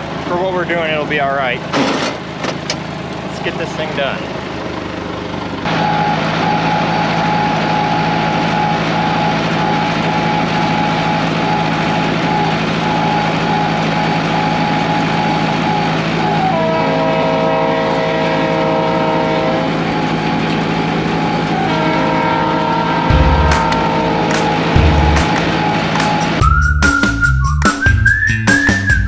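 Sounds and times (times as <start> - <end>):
tractor running: 0.0 - 18.5, 19.5 - 29.0
chord of steady higher tones: 21.4 - 28.1.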